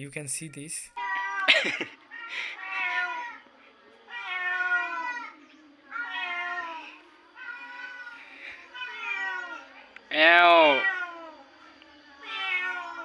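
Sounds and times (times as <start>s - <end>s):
kitten meows: 5.9s - 6.8s, 8.8s - 11.3s, 12.2s - 13.0s.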